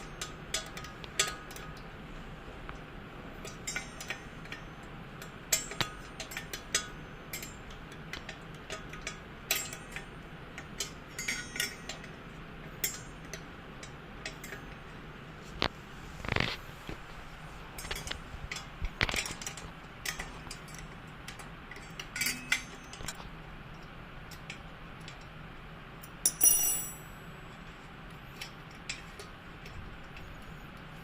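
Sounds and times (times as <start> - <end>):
wrench clinking on bolt: 26.2 - 27.1.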